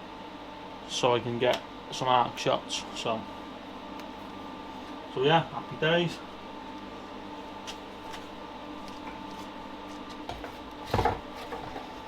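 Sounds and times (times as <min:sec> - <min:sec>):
steady background hum: 0:00.0 - 0:12.0
items clattering on a workbench: 0:07.7 - 0:12.0
knock on a workbench: 0:10.3 - 0:11.8.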